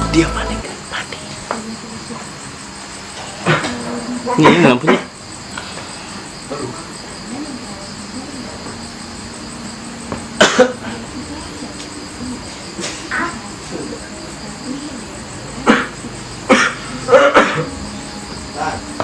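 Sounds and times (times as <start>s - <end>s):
crickets chirring: 0.0s - 19.0s
man coughing harshly: 4.4s - 5.1s, 10.4s - 10.9s, 16.5s - 17.8s.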